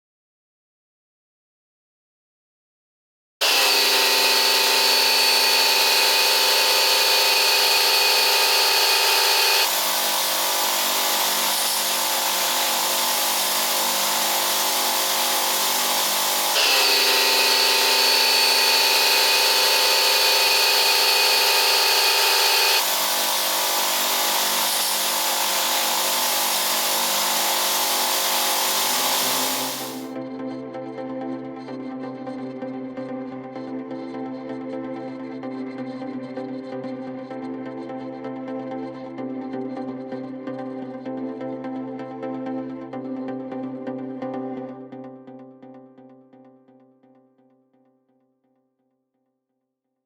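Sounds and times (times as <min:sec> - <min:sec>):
pressure washer whining: 0:03.4 - 0:30.0.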